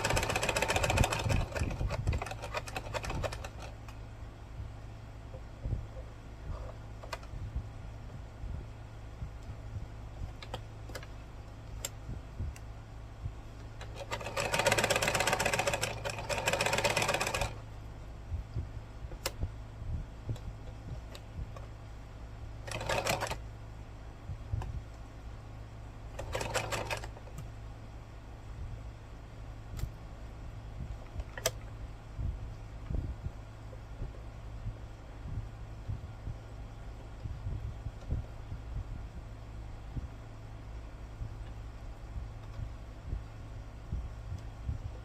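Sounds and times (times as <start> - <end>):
sewing machine stitching: 0.0 - 3.8, 13.8 - 17.6, 22.6 - 23.4, 26.2 - 27.2
scattered clicks: 31.0 - 31.7.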